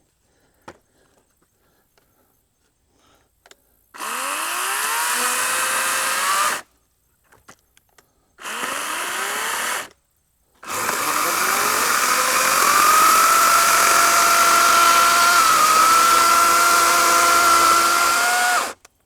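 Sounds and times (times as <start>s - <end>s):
electric chainsaw motor whine: 4.0s - 6.6s, 8.4s - 9.9s, 10.6s - 18.8s.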